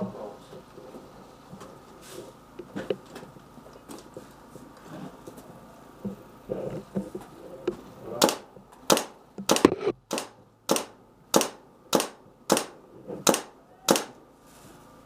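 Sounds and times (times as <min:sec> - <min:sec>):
airsoft gun shots: 0:08.2 - 0:14.2.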